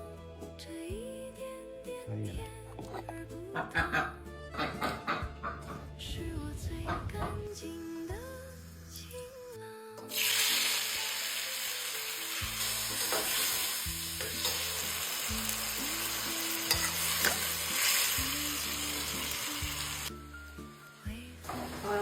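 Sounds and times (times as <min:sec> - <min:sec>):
vegetables sizzling in hot oil: 0:10.1 - 0:22.0.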